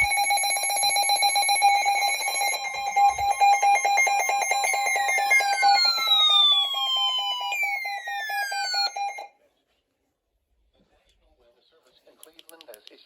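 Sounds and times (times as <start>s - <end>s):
two-tone alarm with flutter: 0.0s - 9.3s
tone sliding down in pitch: 2.8s - 9.2s.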